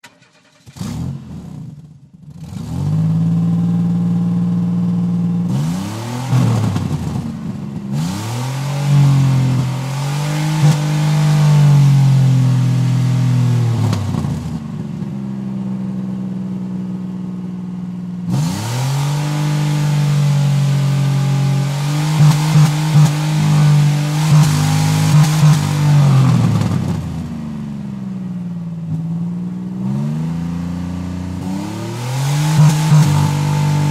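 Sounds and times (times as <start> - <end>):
car engine starter spinning: 0.0 - 0.9
car engine revving: 0.0 - 15.0, 18.2 - 27.8, 28.8 - 33.9.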